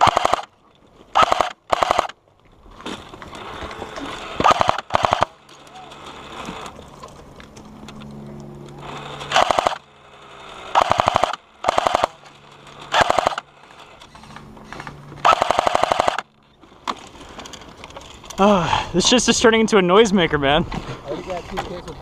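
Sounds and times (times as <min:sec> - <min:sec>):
airsoft gun firing bursts: 0:00.0 - 0:00.5, 0:01.2 - 0:02.2, 0:04.4 - 0:05.4, 0:09.3 - 0:09.8, 0:10.7 - 0:12.2, 0:12.9 - 0:13.5, 0:15.2 - 0:16.3
low mechanical hum: 0:00.0 - 0:22.0.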